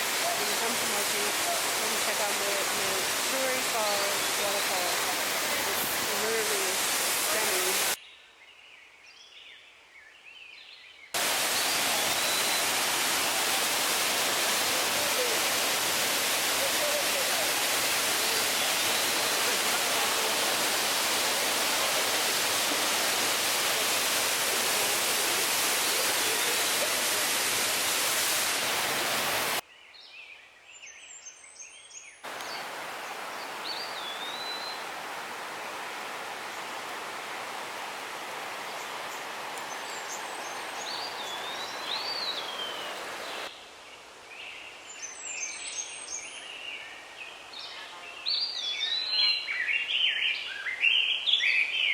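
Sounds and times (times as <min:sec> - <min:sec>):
waterfall rushing: 0:00.0 - 0:08.0, 0:11.2 - 0:29.6, 0:32.3 - 0:43.5.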